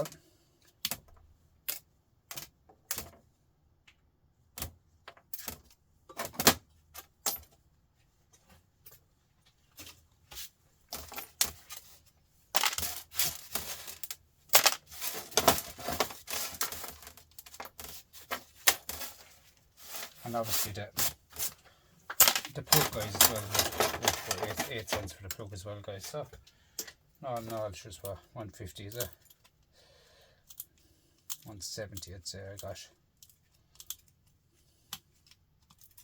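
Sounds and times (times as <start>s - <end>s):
metal tools clicking and clattering: 12.6s - 19.2s, 22.1s - 25.2s
rattling and scraping: 12.6s - 25.2s.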